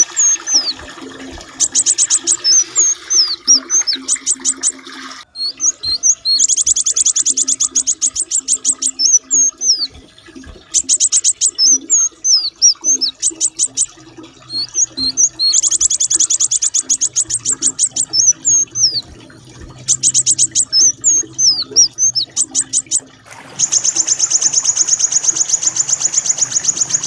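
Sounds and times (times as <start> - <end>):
songbird looping whistles: 0.0 - 0.9, 1.5 - 10.0, 10.6 - 27.0
songbird rapid rolling notes: 0.0 - 27.0.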